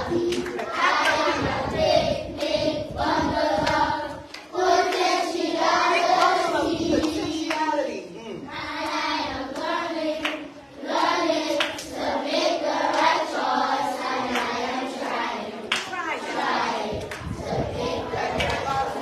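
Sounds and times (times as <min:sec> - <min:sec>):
children singing together: 0:00.0 - 0:07.6, 0:08.5 - 0:19.0
hand claps: 0:00.2 - 0:01.3, 0:09.6 - 0:10.4, 0:11.5 - 0:11.9, 0:15.7 - 0:16.0, 0:17.0 - 0:17.3, 0:18.4 - 0:18.7.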